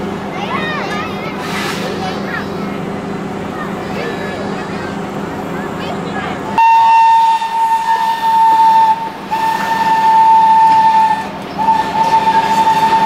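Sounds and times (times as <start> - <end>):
locomotive whistle blowing: 6.6 - 13.0.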